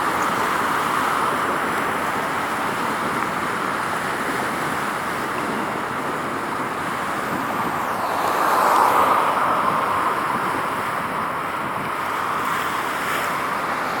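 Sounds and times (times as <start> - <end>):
road traffic noise: 0.0 - 14.0
vehicle passing: 7.0 - 14.0.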